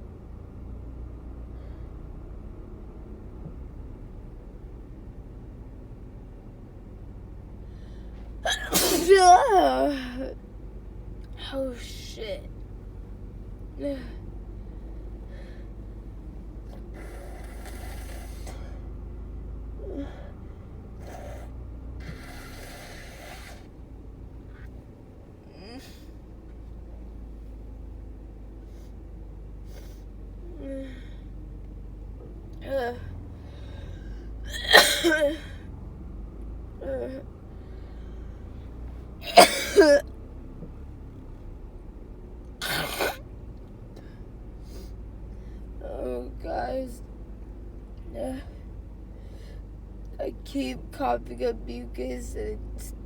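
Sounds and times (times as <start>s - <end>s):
woman sneezing and coughing: 8.4s - 9.7s, 34.5s - 35.5s, 39.2s - 40.0s, 42.6s - 43.2s
gasp and breaths: 19.9s - 23.7s
person blowing nose: 22.0s - 23.7s.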